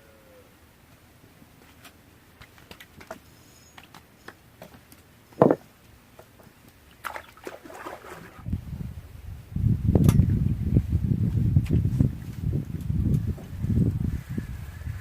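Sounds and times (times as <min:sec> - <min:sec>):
watery rustling: 0:06.8 - 0:08.5.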